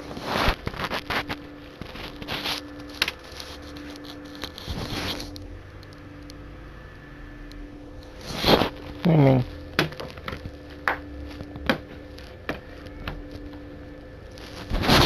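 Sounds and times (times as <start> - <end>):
packaging rustling: 0.0 - 5.4.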